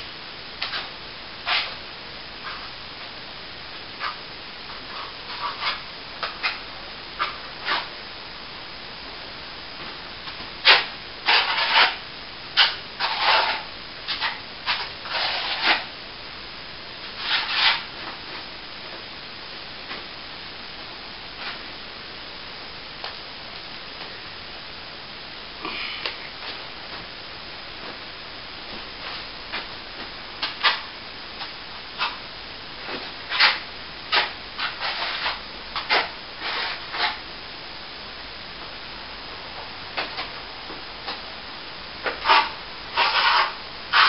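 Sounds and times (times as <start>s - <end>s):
hand-sanding plaster: 10.6s - 12.0s, 12.6s - 15.9s, 17.2s - 17.9s, 33.3s - 37.2s, 42.2s - 44.0s.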